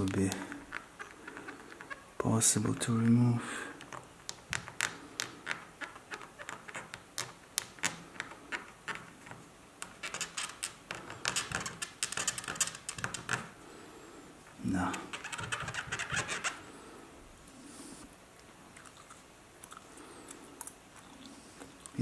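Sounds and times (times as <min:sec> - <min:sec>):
light scratching: 0:00.0 - 0:03.3, 0:04.8 - 0:13.5, 0:14.6 - 0:16.6.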